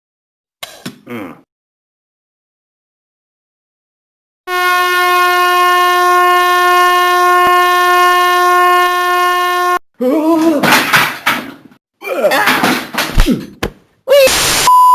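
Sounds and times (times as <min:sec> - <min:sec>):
buzzy horn tone: 0:04.5 - 0:09.8.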